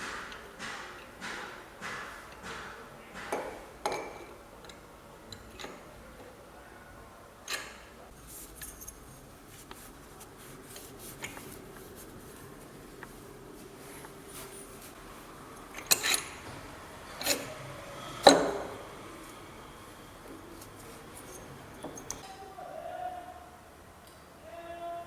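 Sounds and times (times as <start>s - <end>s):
loud knock: 0.0s - 4.1s
metallic clicks of tools and parts: 15.7s - 16.4s, 20.6s - 22.3s.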